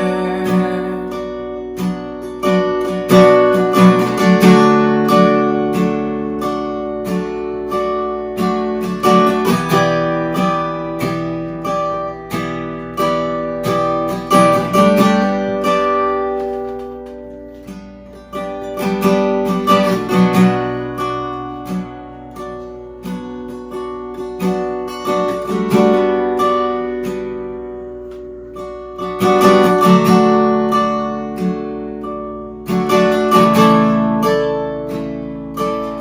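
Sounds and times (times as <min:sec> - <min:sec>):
strummed acoustic guitar: 0:00.0 - 0:36.0.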